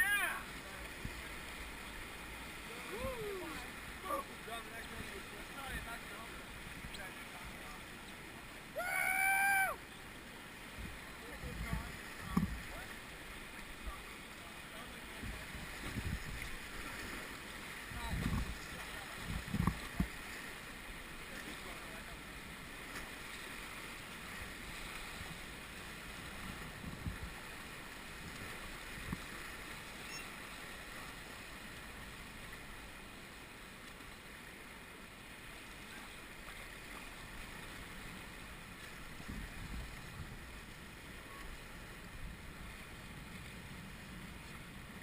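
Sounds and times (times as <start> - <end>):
river water rushing: 0.0 - 45.0
wind on microphone: 15.1 - 17.0, 17.9 - 20.2, 26.2 - 27.5, 39.1 - 40.6.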